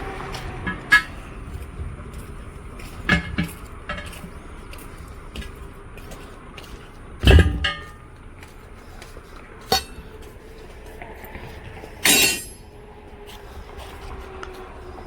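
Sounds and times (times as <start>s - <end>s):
heavy metal clanks ringing: 0.0s - 1.4s, 7.2s - 8.1s, 9.6s - 10.2s, 12.0s - 12.7s.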